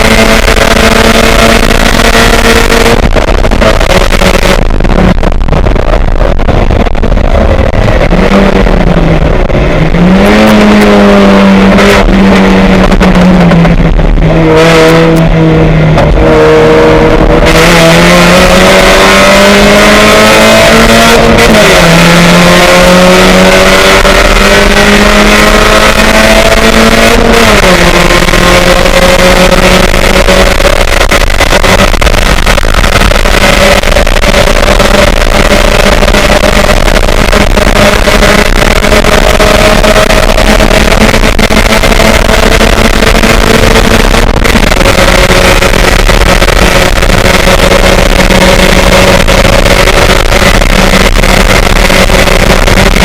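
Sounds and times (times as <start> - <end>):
race car engine at full throttle: 0.0 - 53.0.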